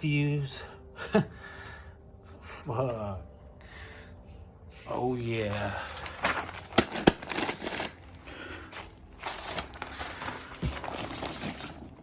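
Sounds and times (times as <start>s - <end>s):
packaging rustling and crinkling: 5.4s - 12.0s.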